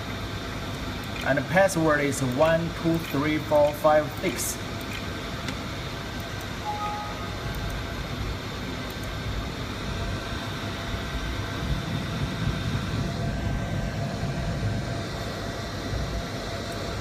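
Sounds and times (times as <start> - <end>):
faint beeps: 6.6 - 7.8.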